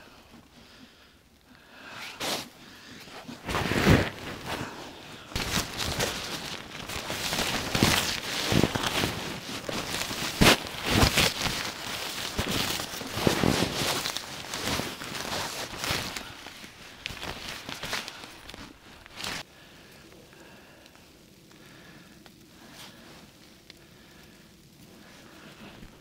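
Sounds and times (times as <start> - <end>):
rustling and scuffing: 2.1 - 19.4.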